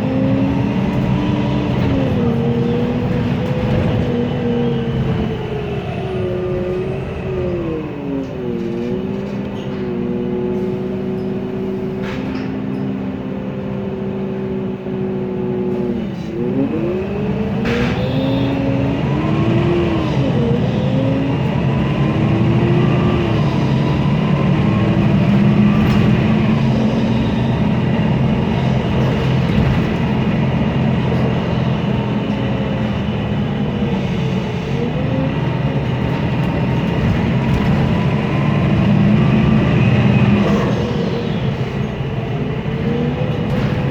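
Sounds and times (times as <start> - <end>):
bus engine running: 0.0 - 43.9.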